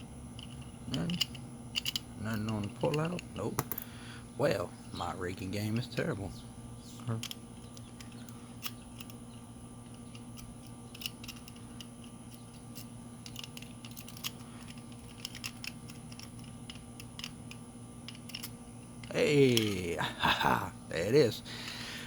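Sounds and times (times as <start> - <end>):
steady low hum: 0.0 - 22.0
lock pick clicking in padlock: 0.4 - 3.9, 7.2 - 19.2.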